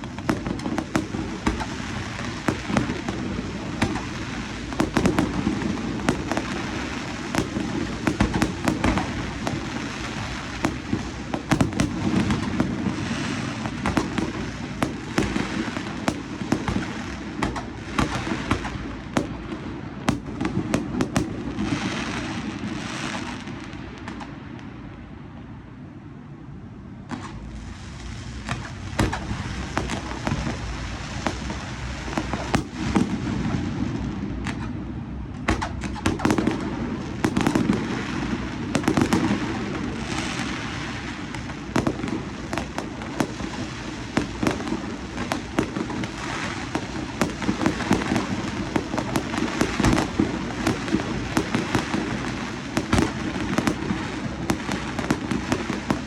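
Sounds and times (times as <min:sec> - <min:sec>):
fireworks bangs and crackles: 0:00.0 - 0:25.8, 0:26.8 - 0:56.0.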